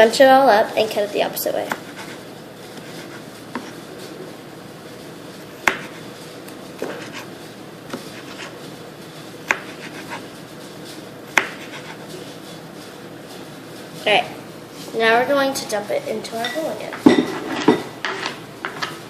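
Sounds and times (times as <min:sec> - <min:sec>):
knife chopping on cutting board: 0:01.7 - 0:02.2, 0:02.8 - 0:03.8, 0:05.5 - 0:06.0, 0:06.8 - 0:07.3, 0:07.9 - 0:08.6, 0:09.5 - 0:10.3, 0:11.3 - 0:12.1.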